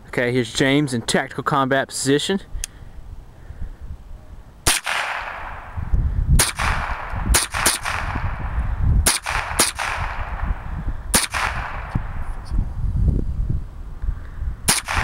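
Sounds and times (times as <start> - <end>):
rifle shots with ringing echo: 4.6 - 5.8, 6.4 - 12.2, 14.7 - 15.0.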